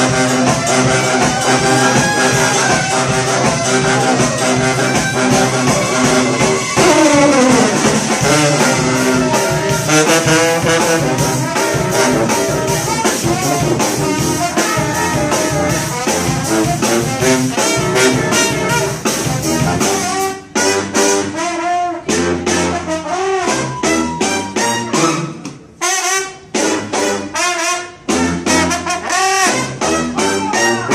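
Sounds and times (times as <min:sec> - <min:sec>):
horn sliding down in pitch: 0:00.0 - 0:16.0
steady drum beat: 0:00.0 - 0:21.4
brass band playing upbeat jazz: 0:00.0 - 0:30.9.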